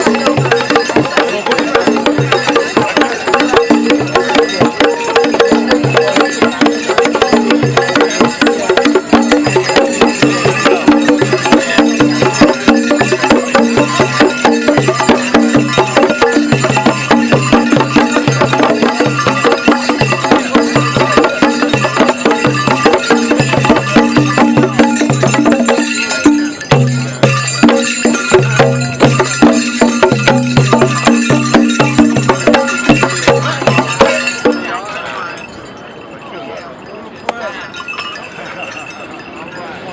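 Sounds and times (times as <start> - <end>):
sharp hand drum strokes: 0.0 - 34.7
rattling percussion: 0.0 - 35.8, 37.2 - 39.9.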